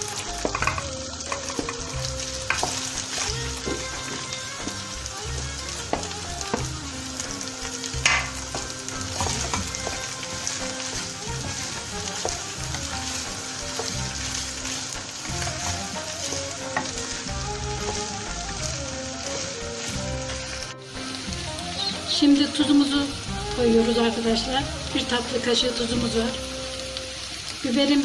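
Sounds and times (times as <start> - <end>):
food sizzling in oil: 0.0 - 28.0
spoon scraping and knocking a pot: 0.4 - 1.8, 8.0 - 10.1.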